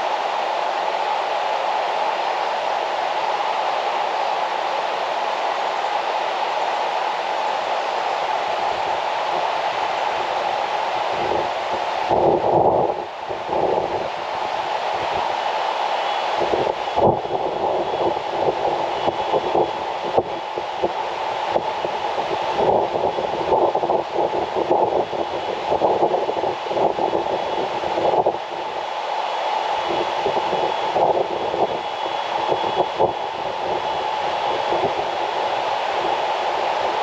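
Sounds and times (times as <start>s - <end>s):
river rushing: 0.0s - 37.0s.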